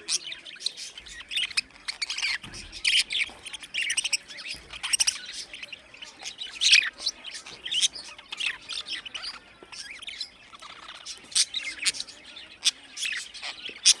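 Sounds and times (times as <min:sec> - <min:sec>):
budgerigars chirping and chattering: 0:00.0 - 0:14.0.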